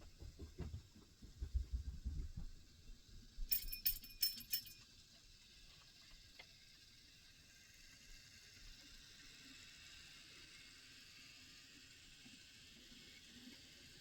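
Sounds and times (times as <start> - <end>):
bright metallic jingle: 3.5 - 4.8.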